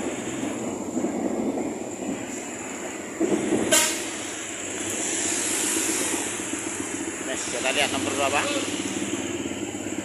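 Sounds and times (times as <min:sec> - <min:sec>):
bus diesel engine running: 0:00.0 - 0:10.0
bus horn toot: 0:03.7 - 0:04.1.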